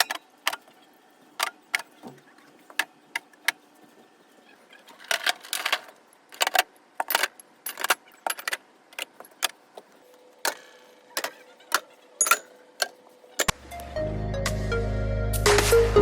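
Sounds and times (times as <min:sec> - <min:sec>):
containers clinking and knocking: 0:10.5 - 0:13.6.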